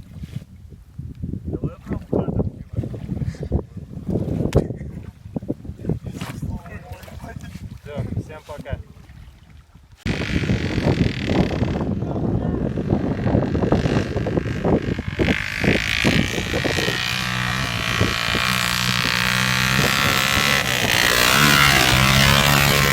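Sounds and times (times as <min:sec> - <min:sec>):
wind buffeting microphone: 0:00.0 - 0:22.9
motor running: 0:12.8 - 0:22.9.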